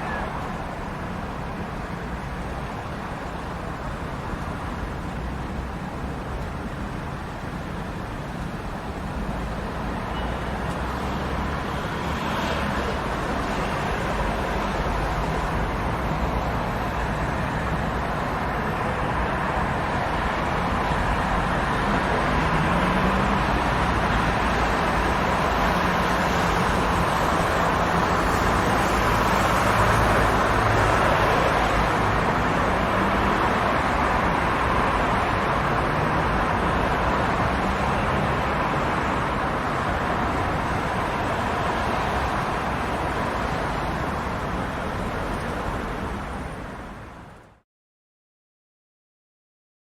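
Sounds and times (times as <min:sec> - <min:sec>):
road traffic: 0:00.0 - 0:47.6
cars passing: 0:08.7 - 0:47.6.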